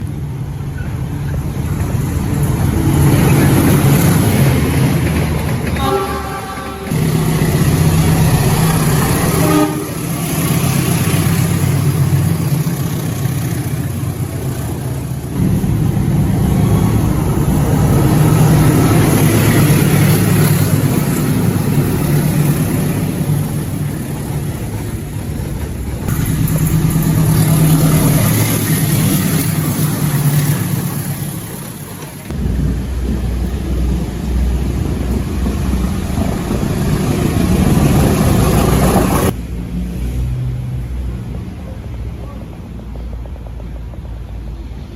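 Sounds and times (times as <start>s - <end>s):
diesel locomotive engine rumbling: 0.0s - 44.9s.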